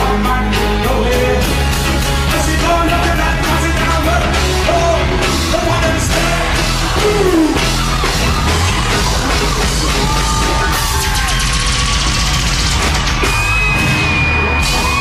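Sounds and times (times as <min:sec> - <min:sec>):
loud dancehall music: 0:00.0 - 0:15.0
person singing and shouting: 0:02.3 - 0:11.4.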